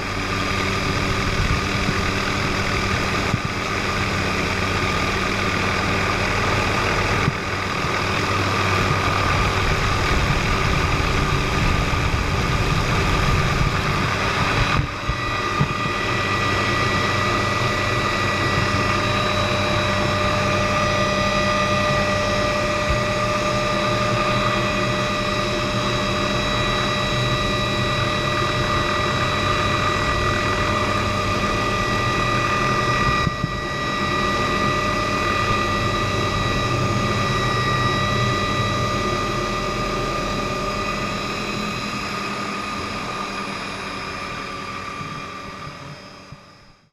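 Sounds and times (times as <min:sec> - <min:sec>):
helicopter engine and rotor: 0:00.0 - 0:46.9
high whine: 0:00.0 - 0:46.9.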